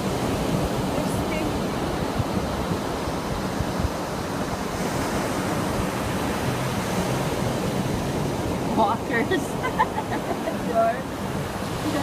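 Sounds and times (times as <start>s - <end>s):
ocean surf: 0.0s - 12.0s
wind: 0.0s - 12.0s
wind buffeting microphone: 0.0s - 12.0s.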